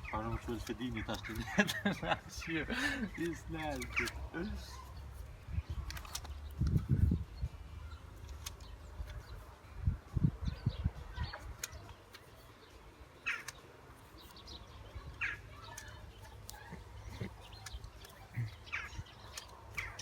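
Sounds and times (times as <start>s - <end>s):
bird chirps: 10.4s - 20.0s.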